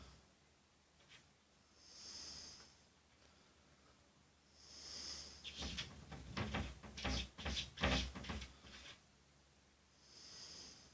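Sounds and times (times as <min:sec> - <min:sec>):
soft hiss: 0:00.0 - 0:10.9
cupboard door knocking and rattling: 0:05.5 - 0:08.8.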